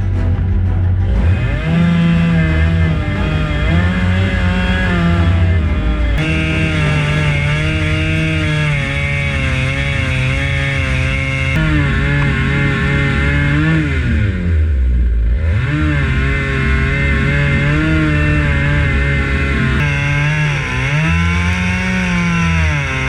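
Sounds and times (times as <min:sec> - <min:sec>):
chainsaw cutting log: 0:06.0 - 0:14.0, 0:19.4 - 0:23.0.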